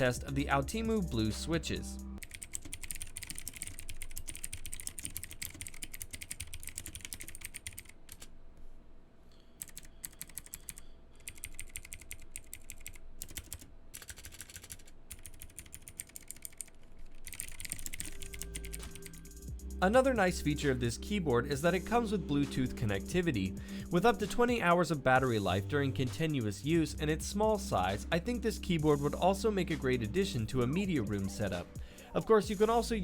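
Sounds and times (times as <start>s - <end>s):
clicky mechanical keyboard typing: 2.2s - 8.3s, 9.6s - 19.2s.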